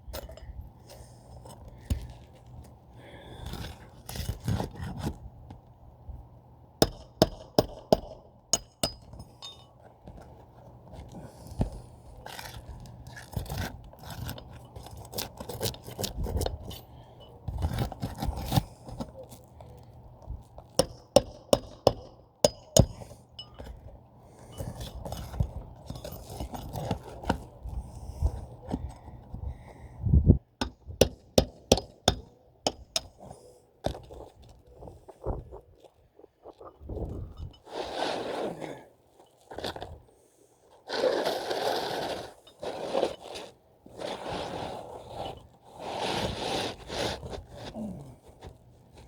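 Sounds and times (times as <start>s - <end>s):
hand tools clinking and scraping: 0.0s - 2.6s, 8.6s - 19.8s, 20.6s - 29.0s, 40.9s - 48.6s
steady low hum: 0.0s - 37.6s
hand tools knocking and clicking: 6.8s - 9.7s, 20.8s - 23.8s, 30.6s - 33.2s.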